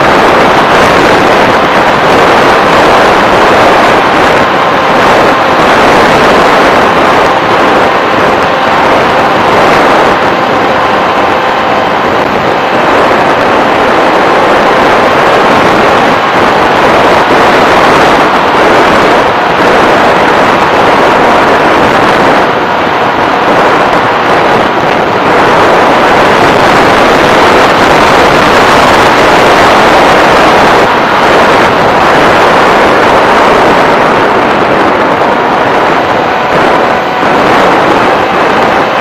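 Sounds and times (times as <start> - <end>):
faint steady whine: 0.0 - 39.0
model aircraft wind and propeller: 0.0 - 39.0.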